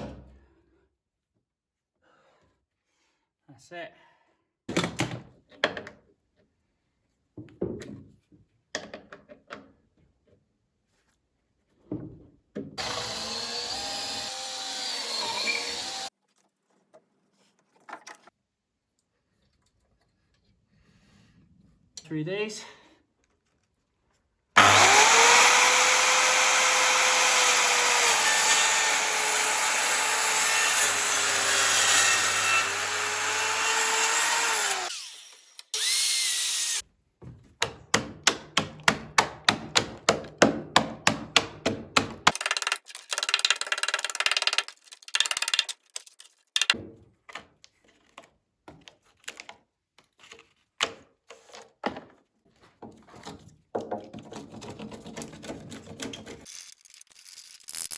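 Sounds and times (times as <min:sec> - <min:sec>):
power drill boring through timber: 0:12.8 - 0:16.1, 0:24.6 - 0:36.8, 0:42.2 - 0:46.8.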